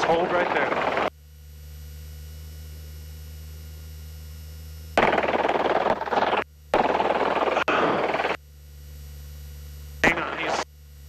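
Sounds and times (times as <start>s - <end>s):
rotor wash noise on microphone: 0.0s - 1.1s
helicopter hum: 0.0s - 1.2s, 5.0s - 8.4s, 10.0s - 10.6s.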